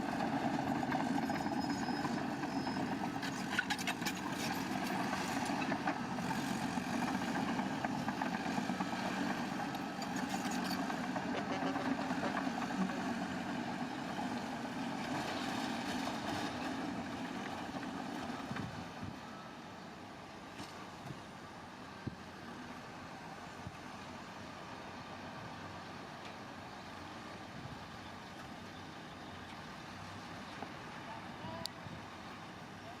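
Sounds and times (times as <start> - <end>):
diesel engine running: 0.0 - 20.4.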